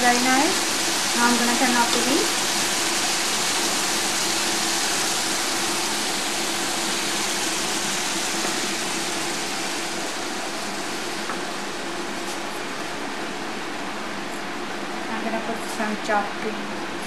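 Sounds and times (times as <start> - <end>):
liver sizzling in a pan: 0.0 - 13.2.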